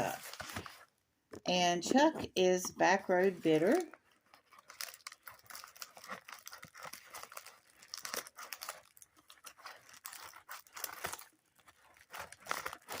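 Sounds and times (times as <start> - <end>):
paper crinkling: 0.0 - 0.9, 3.1 - 13.0
envelope tearing: 3.6 - 13.0.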